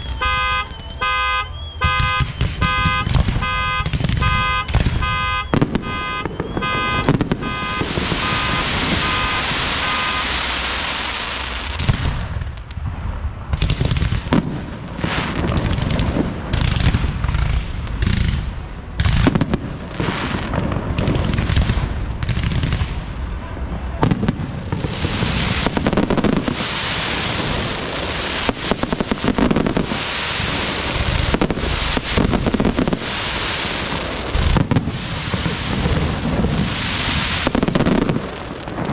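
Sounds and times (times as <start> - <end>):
fireworks bursting and crackling: 0.0 - 38.9
pulsing electronic alarm tone: 0.2 - 10.5.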